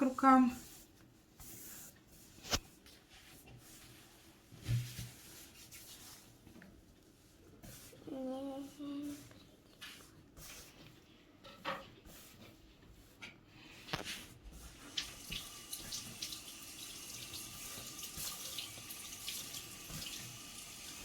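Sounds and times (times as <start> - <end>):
tap water running into sink: 14.8 - 21.0.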